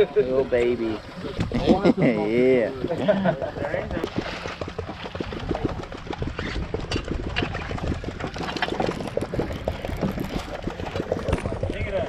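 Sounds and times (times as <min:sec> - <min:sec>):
boat motor idling: 0:00.0 - 0:12.0.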